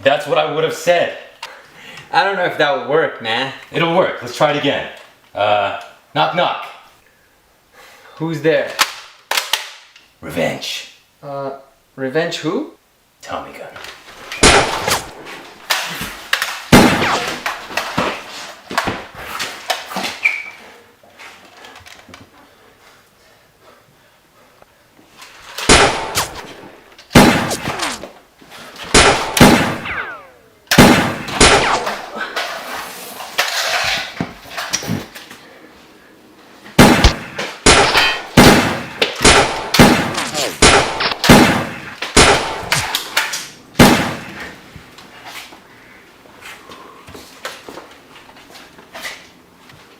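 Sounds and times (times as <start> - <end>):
foam darts smacking: 27.2 - 28.2
loud ringing bangs: 29.0 - 32.2, 36.8 - 42.9
toy blaster fire: 29.0 - 32.2.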